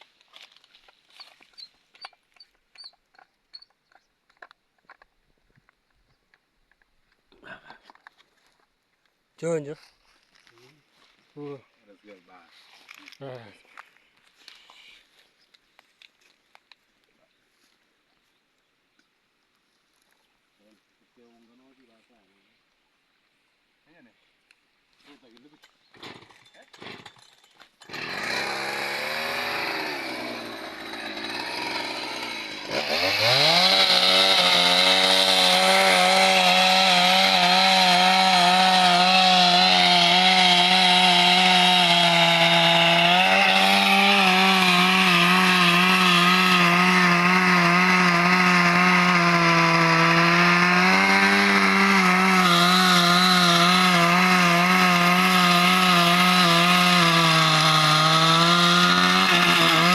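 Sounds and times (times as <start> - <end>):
chainsaw revving and cutting wood: 26.0 - 59.9.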